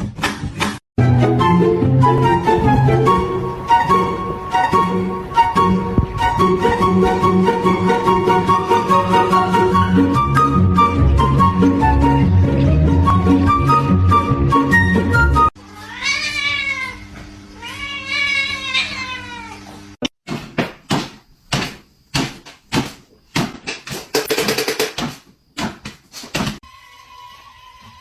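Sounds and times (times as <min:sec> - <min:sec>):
short music: 0:01.0 - 0:15.5
cat meowing: 0:15.7 - 0:19.7.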